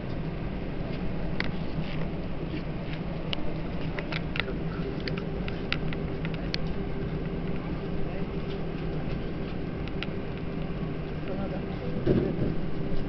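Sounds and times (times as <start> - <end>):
airplane cabin hum: 0.0 - 13.0
light clicks and ticks: 3.3 - 7.7.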